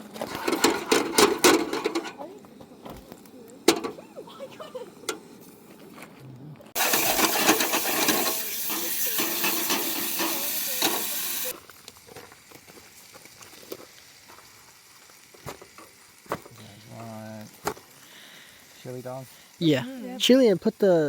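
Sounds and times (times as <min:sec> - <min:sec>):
loud steady hiss: 0:06.8 - 0:21.0.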